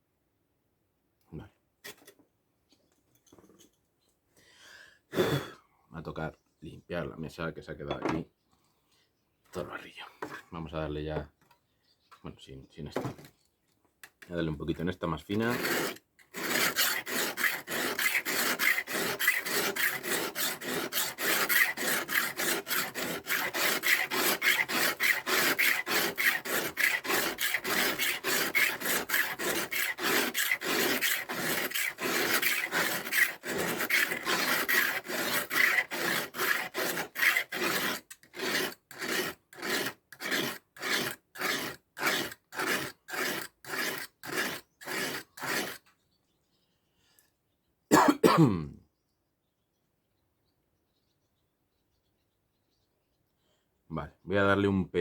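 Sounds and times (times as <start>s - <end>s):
knife rubbed on sharpening stone: 15.5s - 45.8s.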